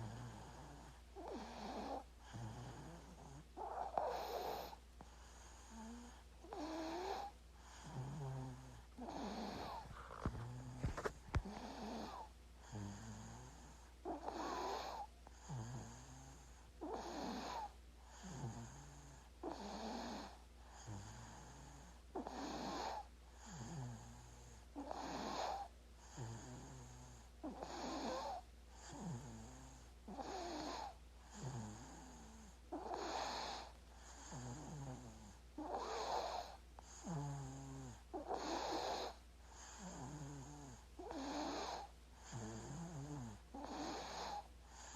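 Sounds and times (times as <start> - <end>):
steady low hum: 0.0 - 16.9
baby snoring: 0.0 - 44.9.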